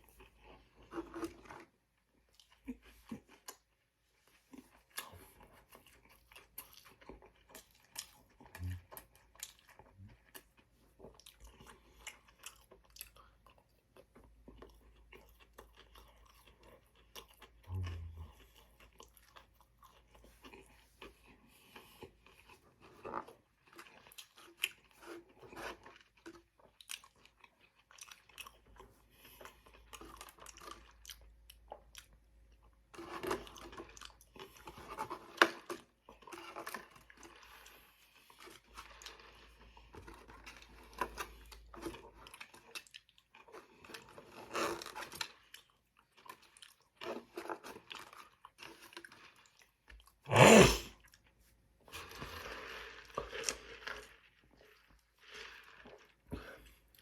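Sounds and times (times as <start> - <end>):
chewing and crunching food: 0.0 - 57.0
wet mouth clicks: 50.3 - 50.9.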